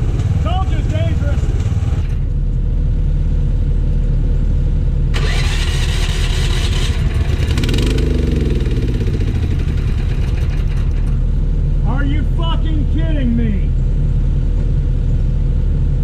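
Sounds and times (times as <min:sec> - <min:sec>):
heavy equipment engine running: 0:00.0 - 0:16.0
rattle: 0:09.3 - 0:11.4.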